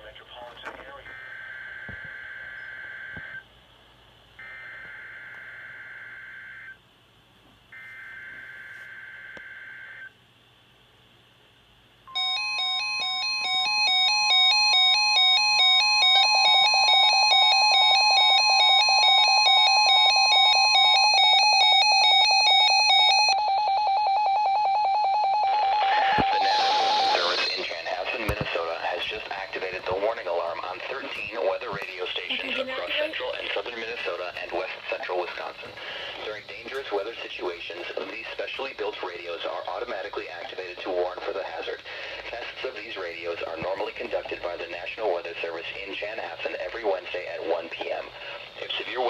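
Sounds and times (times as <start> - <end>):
rapid electronic beeping: 25.2 - 38.3
buzzy digital data tones: 25.6 - 31.2, 31.9 - 38.3.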